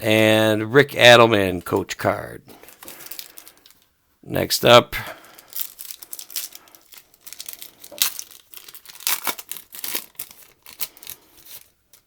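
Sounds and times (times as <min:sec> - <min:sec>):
wax paper wrapper tearing: 0:02.6 - 0:03.8, 0:05.3 - 0:12.0.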